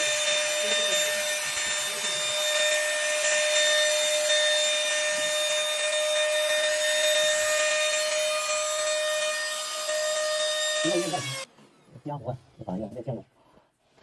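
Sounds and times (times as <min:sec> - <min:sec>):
electric router cutting wood: 0:00.0 - 0:11.5.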